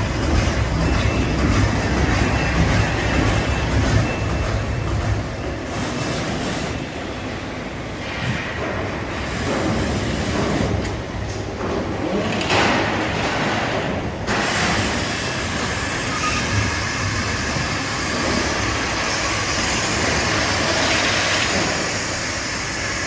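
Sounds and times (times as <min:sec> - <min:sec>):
industrial machinery running: 0:00.0 - 0:23.0.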